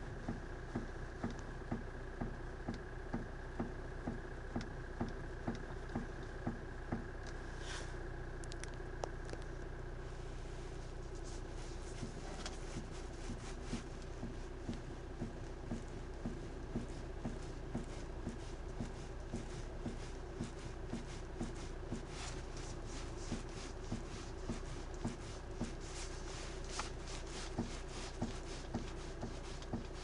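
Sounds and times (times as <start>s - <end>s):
engine idling hum: 0.0s - 30.0s
sharp knocking in steering: 0.2s - 7.2s, 12.0s - 30.0s.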